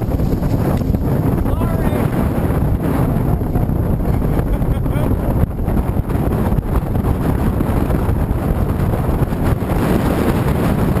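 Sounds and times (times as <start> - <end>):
boat motor noise: 0.0 - 11.0
wind rushing over microphone: 0.0 - 11.0.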